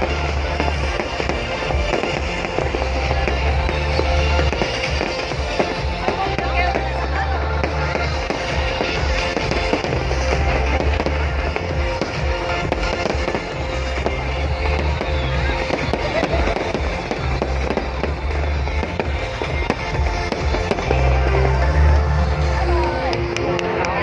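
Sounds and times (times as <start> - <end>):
fireworks bursts and crackle: 0.0 - 24.0
music playing: 0.0 - 24.0
heavy low rumble: 13.4 - 24.0.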